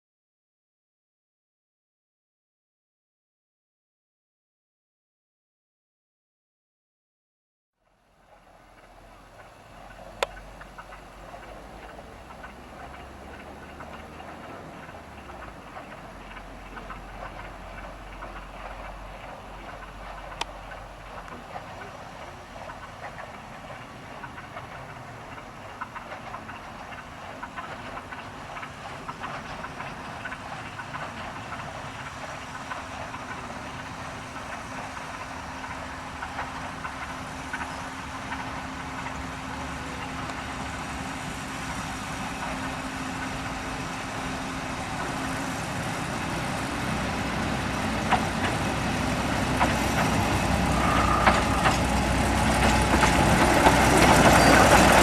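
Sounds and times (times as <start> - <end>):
diesel locomotive engine and wheels: 7.8 - 55.0
sharp clicks from track: 8.8 - 40.8.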